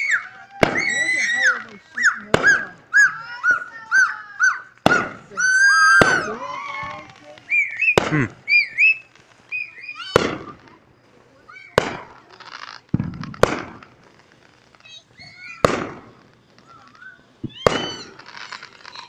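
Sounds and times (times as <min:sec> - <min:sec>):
fireworks bangs echoing: 0:00.0 - 0:19.0.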